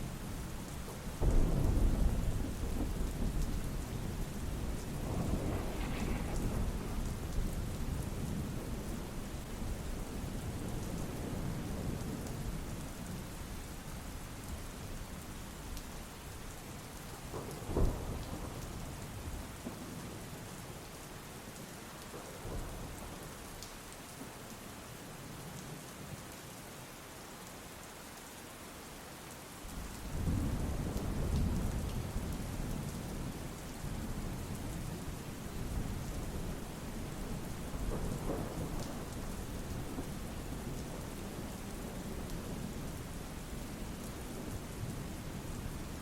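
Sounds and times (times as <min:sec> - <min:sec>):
steady rain falling: 0:00.0 - 0:46.0
low rolls of thunder: 0:00.7 - 0:13.4, 0:17.1 - 0:20.2, 0:29.7 - 0:46.0
sharp thunderclap: 0:01.2 - 0:09.0.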